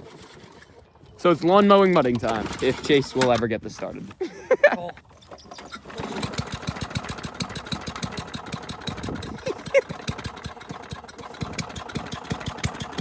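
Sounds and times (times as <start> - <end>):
lawn mower engine chugging: 0.0 - 13.0.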